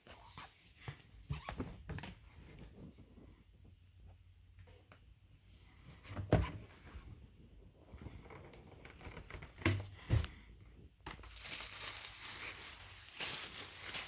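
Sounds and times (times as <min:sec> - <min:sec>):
paper wrapping rustling: 0:11.1 - 0:14.0.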